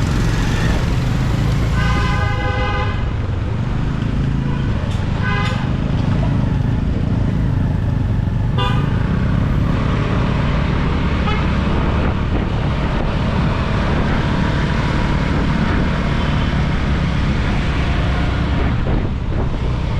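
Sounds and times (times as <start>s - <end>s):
motorcycle engine and wind rumble: 0.0s - 19.9s
vehicle horn honking: 1.6s - 3.1s, 8.6s - 9.0s, 11.2s - 11.6s.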